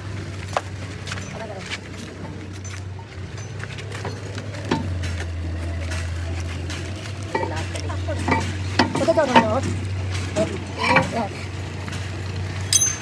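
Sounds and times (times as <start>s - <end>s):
metallic knocks and clicks: 12.7s - 13.0s.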